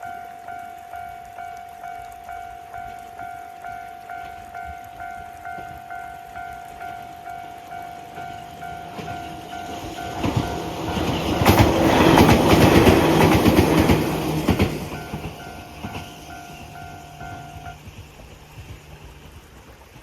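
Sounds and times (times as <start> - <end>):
level crossing alarm bell: 0.0 - 11.2, 14.9 - 17.8
train wheels clicking over rail joints: 2.7 - 20.0.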